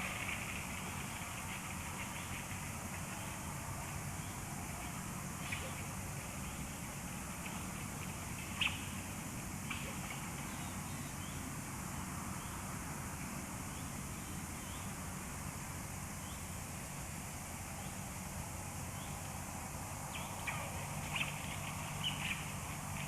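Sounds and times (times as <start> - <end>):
steady hiss: 0.0 - 23.0
high bird calls: 7.4 - 11.4, 20.1 - 23.0.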